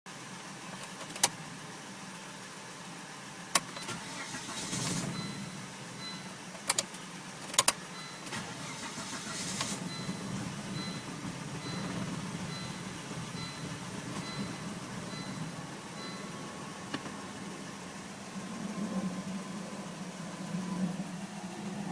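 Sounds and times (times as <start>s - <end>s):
low steady hum: 0.1s - 21.9s
starter motor whirring: 3.8s - 5.5s, 7.6s - 16.2s
faint high beep: 5.1s - 6.4s, 7.9s - 8.4s, 9.8s - 16.5s.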